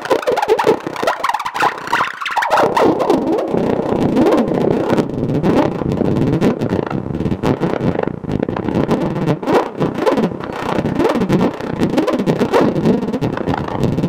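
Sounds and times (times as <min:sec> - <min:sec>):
synthesizer pitch sweeping: 0:00.0 - 0:06.9
choppy synthesizer pulses: 0:00.0 - 0:14.0.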